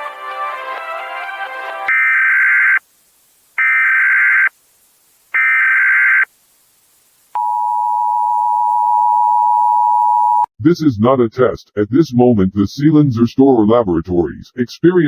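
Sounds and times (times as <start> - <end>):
buzzy electronic data bursts: 0.0 - 7.6.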